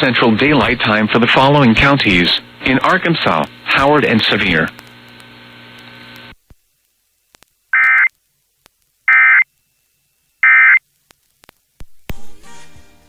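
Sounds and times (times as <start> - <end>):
harsh digital buzzes: 0.4 - 6.4.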